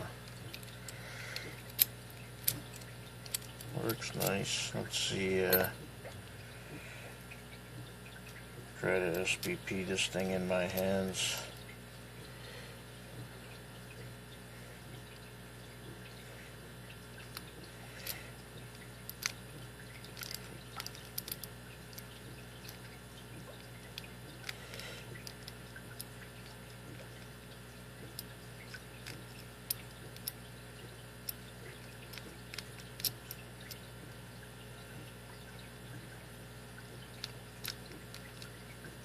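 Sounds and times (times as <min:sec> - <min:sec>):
steady low hum: 0:00.0 - 0:39.0
lock pick clicking and scraping: 0:00.3 - 0:04.4, 0:20.0 - 0:21.5.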